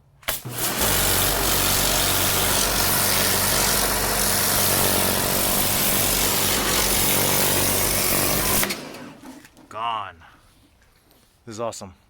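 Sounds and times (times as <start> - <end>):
pressure washer motor humming: 0.2 - 9.6
water jet hissing: 0.3 - 9.5.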